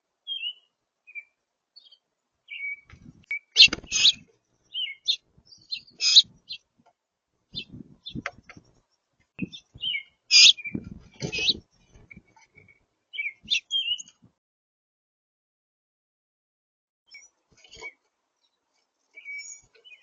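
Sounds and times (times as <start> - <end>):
songbirds chirping: 0.0 - 14.3, 17.1 - 20.0
low thuds: 10.7 - 12.2.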